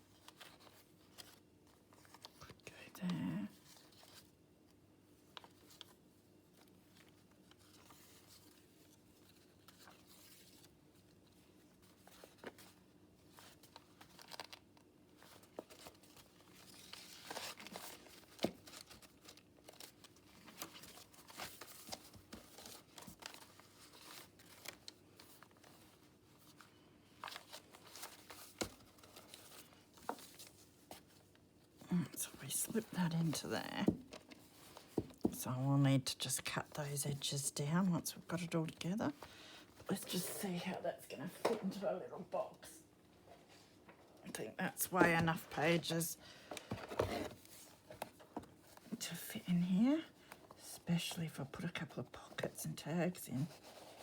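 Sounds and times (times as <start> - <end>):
paper rustling and crinkling: 0.0 - 2.7, 5.2 - 35.4, 53.4 - 54.0.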